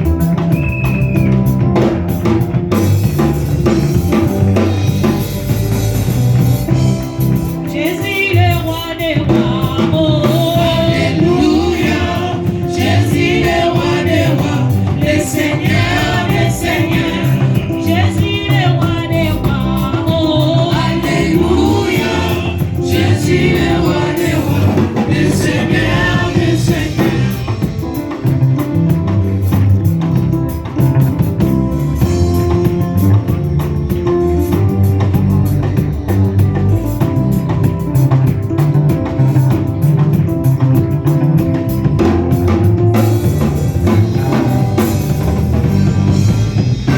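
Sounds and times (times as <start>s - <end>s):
band accompaniment: 0.0s - 46.9s
person singing gospel: 7.4s - 28.1s, 43.0s - 46.2s
repeating low bass line: 9.2s - 46.9s.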